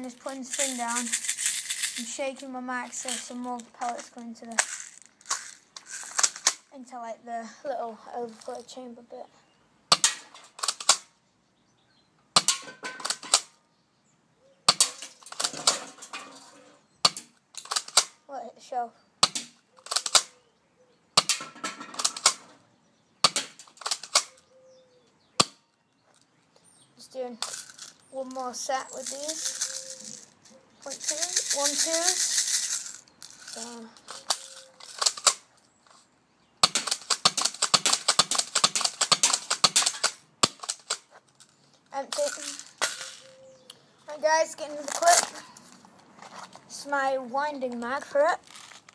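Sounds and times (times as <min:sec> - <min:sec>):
plastic clicking and rattling: 0:23.3 - 0:24.4, 0:30.8 - 0:35.5, 0:36.6 - 0:43.4.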